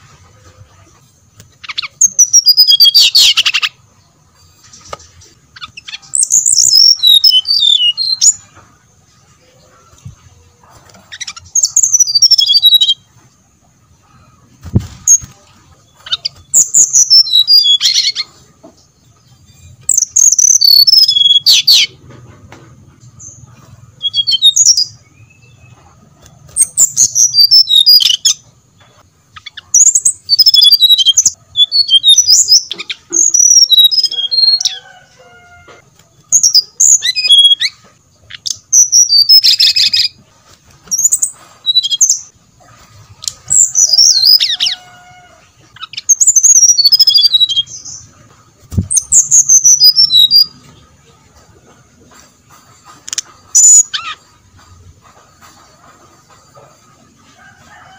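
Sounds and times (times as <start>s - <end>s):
bird singing high whistled notes: 19.9s - 21.9s, 29.8s - 32.7s, 45.8s - 47.8s.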